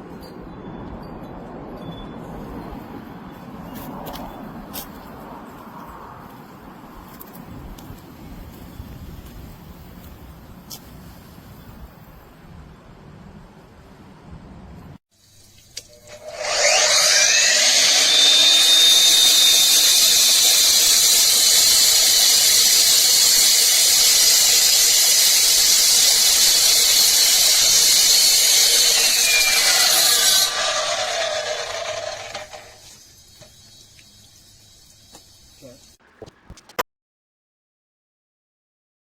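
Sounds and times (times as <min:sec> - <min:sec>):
electric concrete saw whining: 0:15.9 - 0:33.5.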